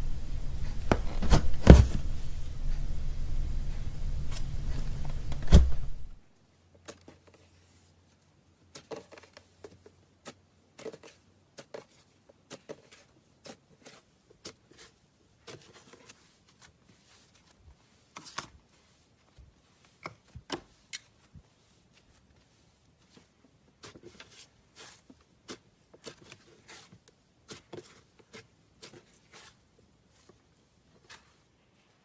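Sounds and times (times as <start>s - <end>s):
loud thump: 0.0s - 2.6s, 3.8s - 6.2s
low hum: 0.0s - 6.2s.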